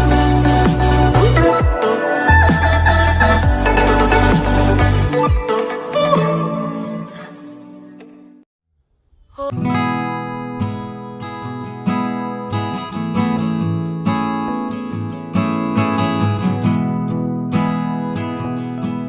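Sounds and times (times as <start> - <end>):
strummed acoustic guitar: 9.5 - 19.0.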